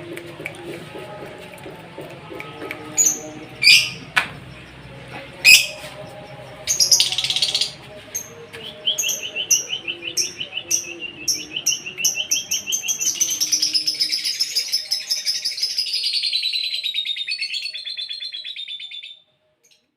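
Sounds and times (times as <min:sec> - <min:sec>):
bird chirping and trilling: 0:03.0 - 0:04.7, 0:05.4 - 0:05.8, 0:06.7 - 0:19.2.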